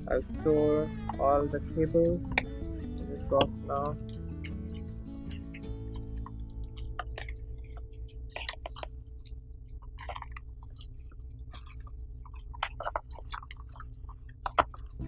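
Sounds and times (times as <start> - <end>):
quiet background music: 0.0 - 10.3.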